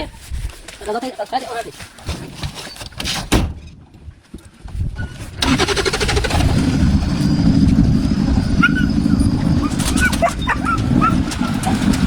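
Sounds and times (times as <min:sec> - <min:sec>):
vehicle engine starting and running: 0:05.4 - 0:12.0.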